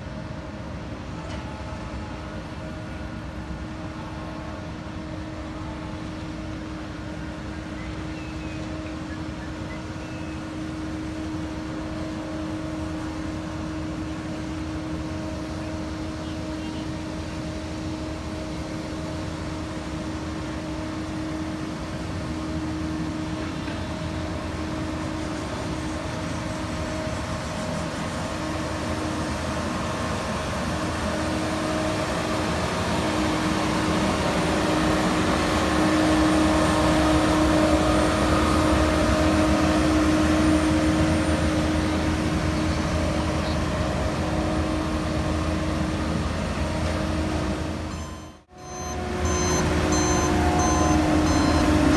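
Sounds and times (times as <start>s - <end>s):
diesel construction machinery running: 0.0s - 51.9s.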